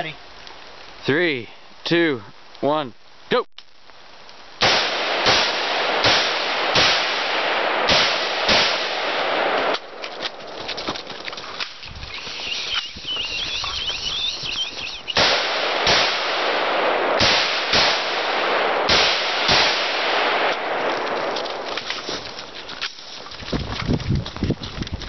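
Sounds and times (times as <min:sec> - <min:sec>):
rifle shots: 0:04.6 - 0:10.7, 0:15.1 - 0:22.0.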